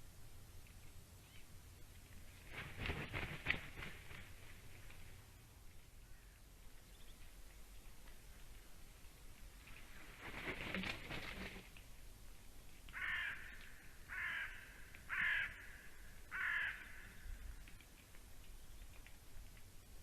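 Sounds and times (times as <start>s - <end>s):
noisy rustling: 0.0s - 13.0s
crow cawing: 12.9s - 17.2s.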